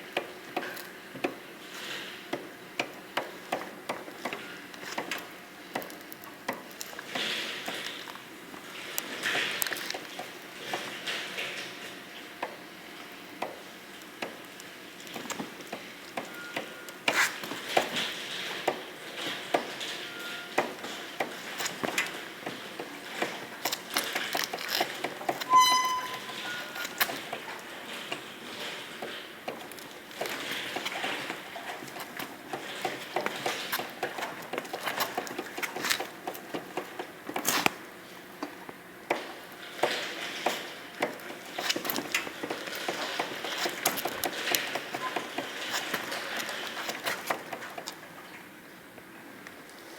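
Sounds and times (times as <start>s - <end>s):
short high squeaks: 25.4s - 27.0s.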